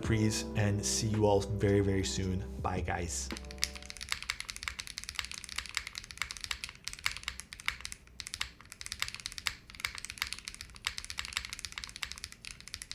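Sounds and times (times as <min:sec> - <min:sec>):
mechanical keyboard typing: 0:03.3 - 0:12.9.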